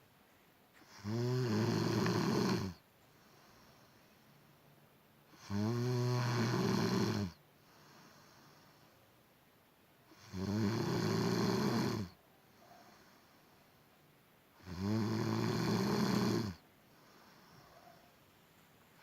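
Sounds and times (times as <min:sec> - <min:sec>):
quiet breathing: 0:00.0 - 0:09.4, 0:10.0 - 0:19.0
loud snoring: 0:00.8 - 0:02.8, 0:05.3 - 0:08.6, 0:10.1 - 0:12.2, 0:14.6 - 0:17.6.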